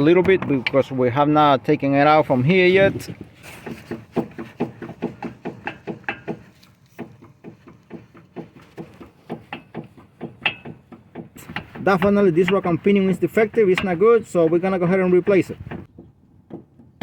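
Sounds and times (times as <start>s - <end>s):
clunking knocks from steering rack: 3.1s - 14.0s.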